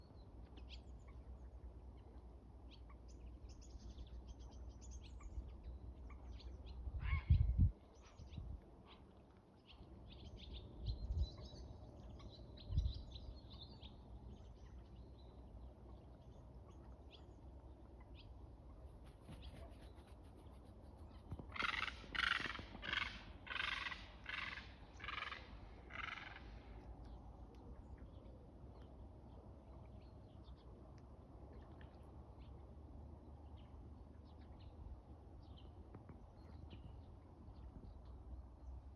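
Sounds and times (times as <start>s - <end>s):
heron harsh creaking calls: 21.6s - 26.4s.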